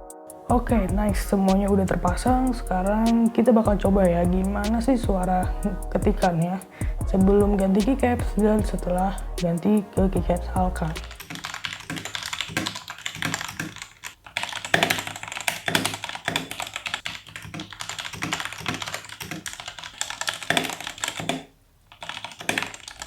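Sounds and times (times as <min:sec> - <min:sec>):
mechanical keyboard typing: 0:11.2 - 0:23.0.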